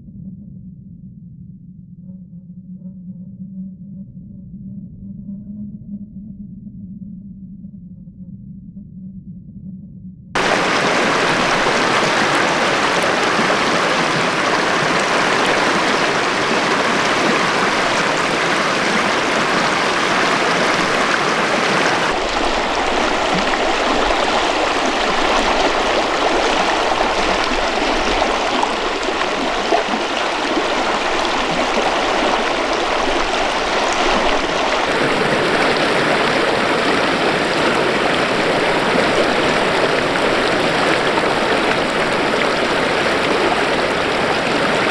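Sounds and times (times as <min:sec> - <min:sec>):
river rushing over rocks: 0:10.4 - 0:44.9.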